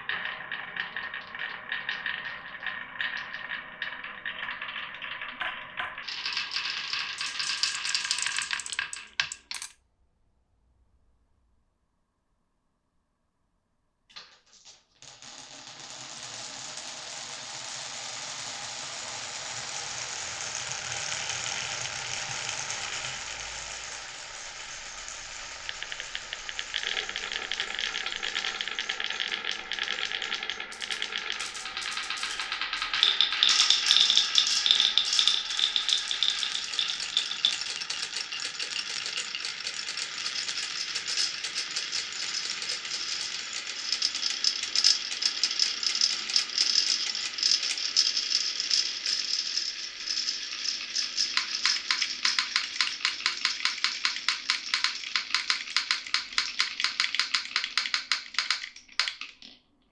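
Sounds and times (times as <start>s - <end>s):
marbles rattling on tracks: 0.0s - 9.7s, 14.1s - 59.6s.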